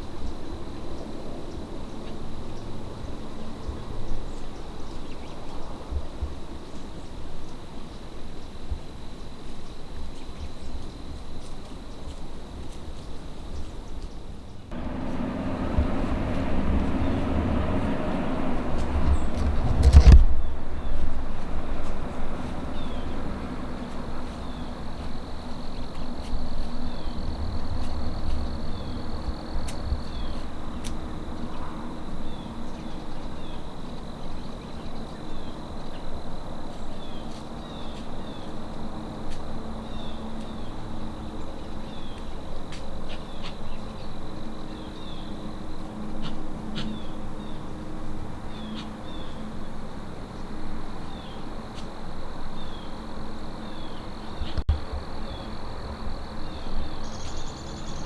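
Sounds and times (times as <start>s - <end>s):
low rumble: 14.7s - 24.2s
insects trilling: 20.7s - 58.0s
insect high chirps: 55.1s - 58.0s.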